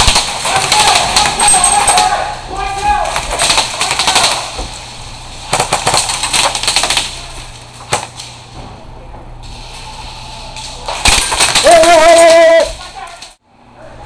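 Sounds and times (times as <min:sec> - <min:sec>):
airsoft guns firing bursts: 0:00.0 - 0:04.6, 0:05.5 - 0:07.2, 0:11.0 - 0:12.5.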